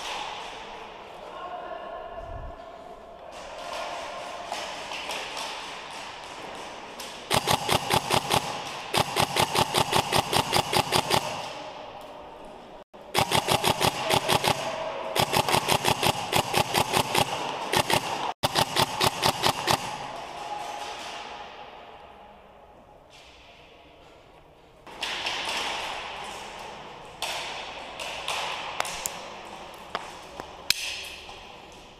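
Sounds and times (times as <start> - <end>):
airsoft rifle full-auto bursts: 7.3 - 11.5, 13.1 - 20.1.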